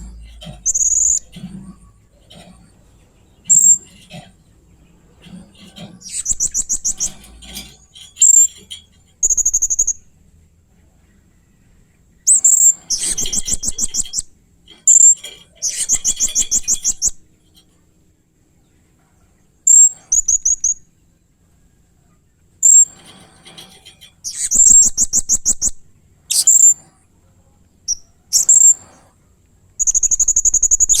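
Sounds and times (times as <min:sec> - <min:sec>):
parrot calling: 0:00.0 - 0:01.6, 0:24.2 - 0:26.8.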